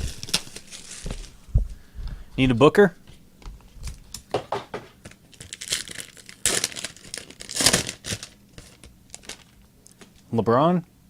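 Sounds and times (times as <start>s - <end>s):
foil wrapper crinkling and tearing: 0.0s - 1.4s, 5.0s - 10.2s.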